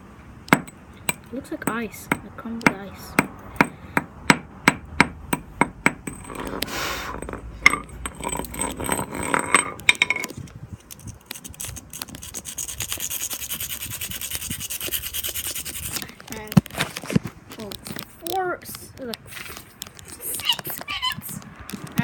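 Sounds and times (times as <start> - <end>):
tapping on glass pieces: 0.5 - 10.4
glass fragments scraping: 6.1 - 13.0
clicks: 17.5 - 22.0.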